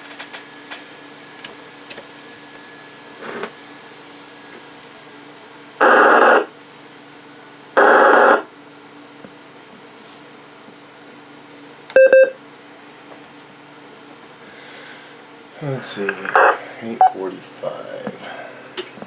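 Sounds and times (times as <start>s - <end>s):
low steady hum: 0.5s - 19.0s
radio static bursts: 15.6s - 17.8s.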